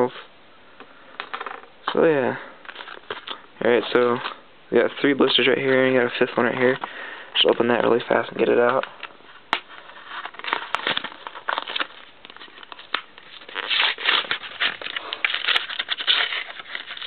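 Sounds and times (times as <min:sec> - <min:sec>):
plastic packaging crinkling: 0:02.6 - 0:17.0.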